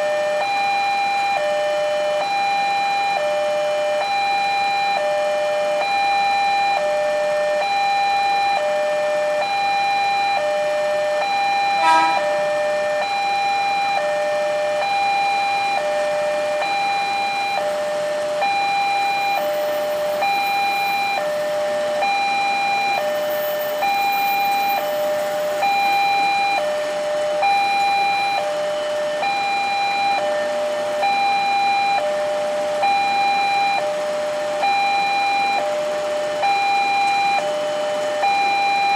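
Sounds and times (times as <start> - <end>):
level crossing two-tone alarm: 0.0 - 38.9
short loud sound: 11.8 - 12.2.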